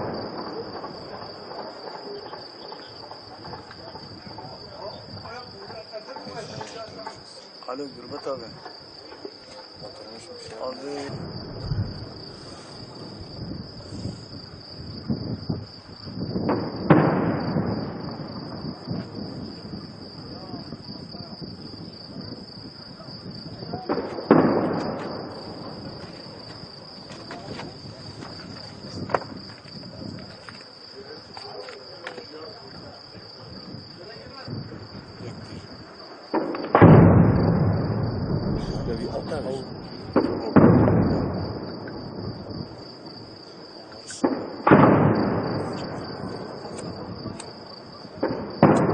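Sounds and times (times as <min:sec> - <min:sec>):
crickets chirping: 0:00.0 - 0:48.9
distant heavy weapons blasts: 0:16.4 - 0:20.8, 0:23.7 - 0:29.5, 0:35.8 - 0:42.8, 0:44.2 - 0:47.4, 0:48.1 - 0:48.9
scattered gunshots: 0:23.8 - 0:25.9, 0:36.3 - 0:41.7, 0:48.2 - 0:48.9.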